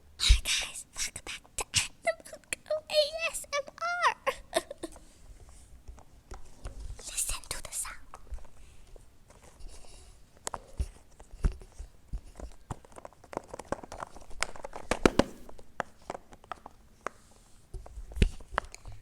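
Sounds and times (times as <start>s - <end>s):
dull thumps: 15.0s - 15.5s.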